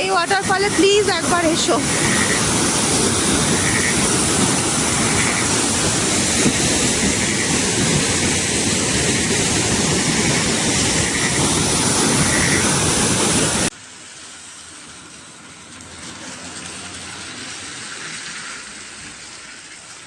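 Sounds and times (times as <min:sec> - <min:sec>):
waterfall rushing: 0:00.0 - 0:13.7.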